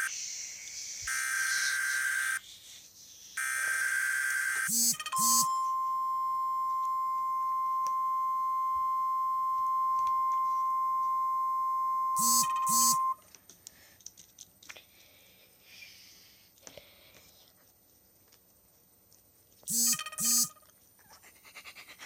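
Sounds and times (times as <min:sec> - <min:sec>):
steady high alert tone: 0:03.4 - 0:13.2, 0:19.7 - 0:20.6.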